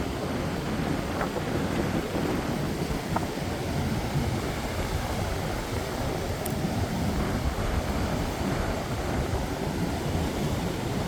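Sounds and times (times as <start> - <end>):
surf washing: 0.0 - 11.0
wind buffeting microphone: 0.0 - 11.0.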